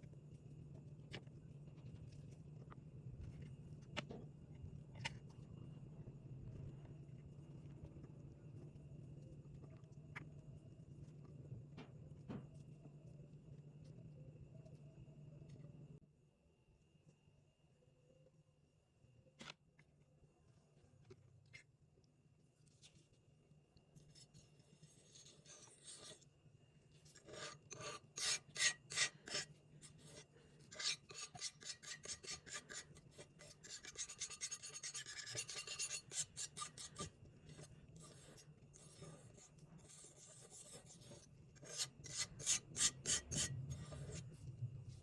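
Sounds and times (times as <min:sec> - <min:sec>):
paint tool scraping thick paint: 0:30.7 - 0:37.1.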